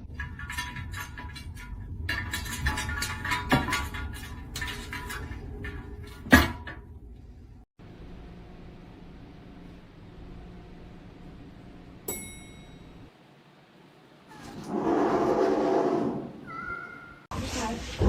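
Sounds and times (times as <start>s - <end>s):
household knocks and rattles: 0.0s - 7.0s.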